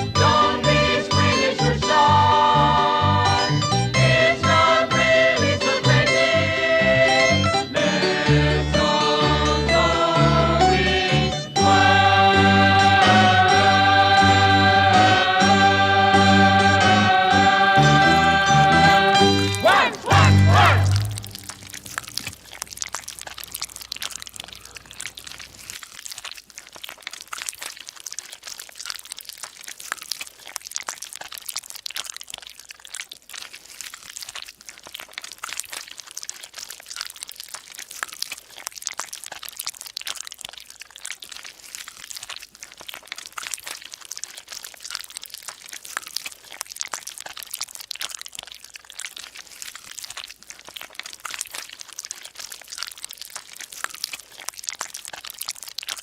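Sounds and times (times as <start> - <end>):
dense high-pitched crackling: 0.0 - 10.2, 11.1 - 56.0.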